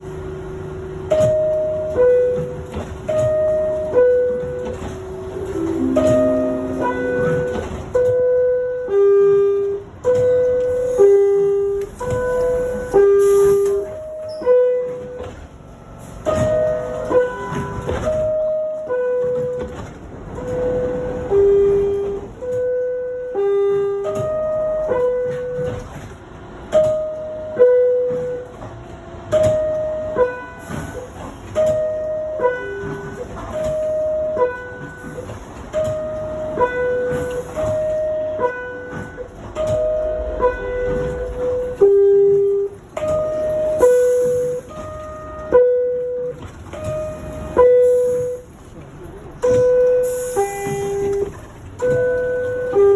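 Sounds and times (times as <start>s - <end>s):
train rumble: 0.0s - 52.9s
two-note door chime: 5.4s - 7.8s.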